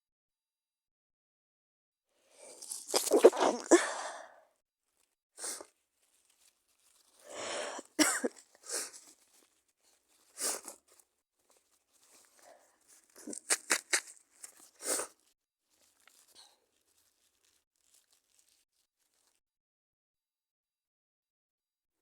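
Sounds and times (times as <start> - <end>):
woman stifling sneezes: 3.0 - 4.3, 7.4 - 8.9
woman coughing: 7.4 - 8.3.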